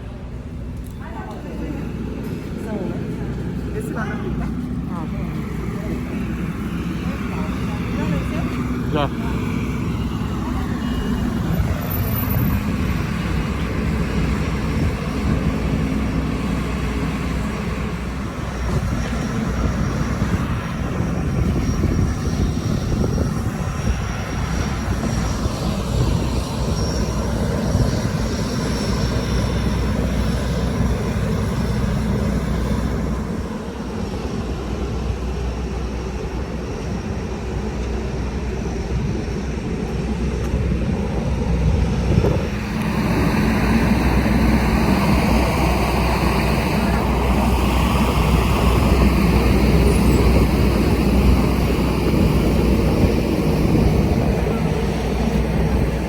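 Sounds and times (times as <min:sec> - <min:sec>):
airplane engines running: 0:00.0 - 0:56.0.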